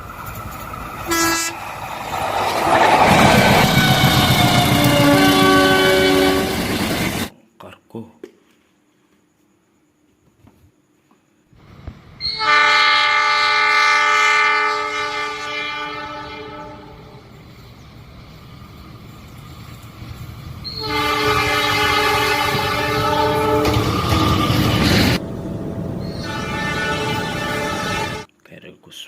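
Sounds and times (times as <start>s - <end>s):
train running rumble: 0.0s - 7.3s, 15.4s - 28.3s
train horn blast: 1.1s - 1.6s, 2.6s - 6.8s, 12.3s - 17.2s, 20.8s - 24.8s, 26.0s - 28.3s.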